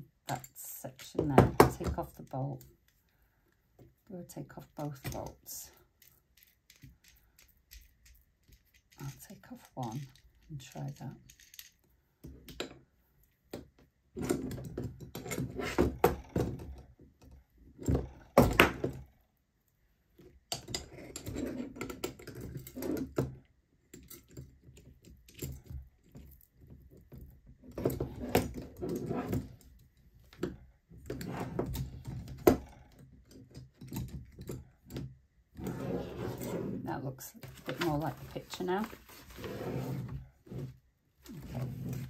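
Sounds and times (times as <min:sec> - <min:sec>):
small metal parts clinking and rattling: 0:04.9 - 0:12.8, 0:23.9 - 0:27.3.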